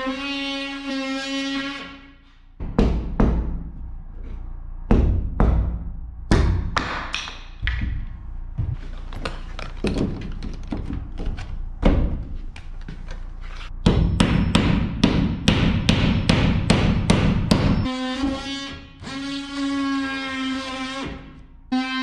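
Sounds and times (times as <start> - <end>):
hammer nailing into wood: 13.9 - 17.8.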